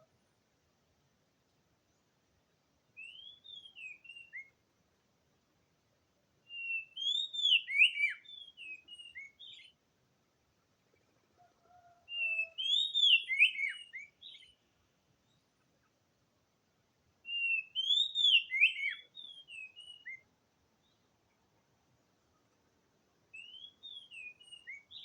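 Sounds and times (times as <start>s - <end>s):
bird whistling song: 3.0s - 4.6s, 6.5s - 9.8s, 11.8s - 14.6s, 17.2s - 21.0s, 23.3s - 25.0s.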